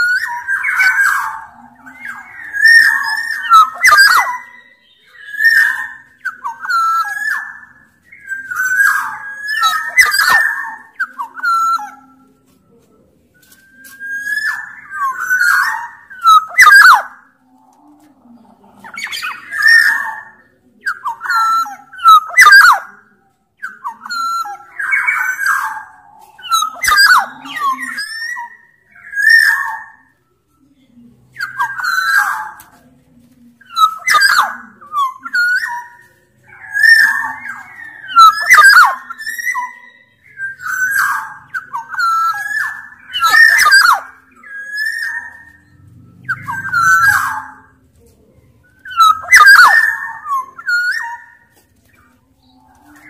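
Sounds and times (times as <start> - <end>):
bird harsh rasping calls: 0.0 - 12.3, 18.6 - 30.1, 33.7 - 47.9, 48.6 - 53.0
bird whistling song: 0.0 - 12.5, 13.4 - 17.5, 18.8 - 30.6, 31.3 - 32.8, 33.6 - 47.9, 48.5 - 53.0.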